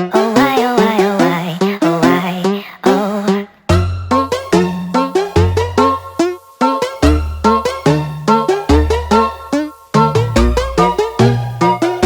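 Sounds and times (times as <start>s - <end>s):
bass line: 3.7s - 6.4s, 7.0s - 12.0s
bouncy synth melody: 3.7s - 12.0s.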